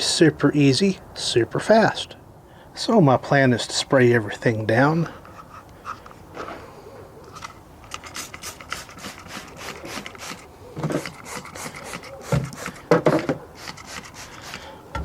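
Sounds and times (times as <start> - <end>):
spray bottle hissing sprays: 8.0 - 12.8, 13.6 - 14.6.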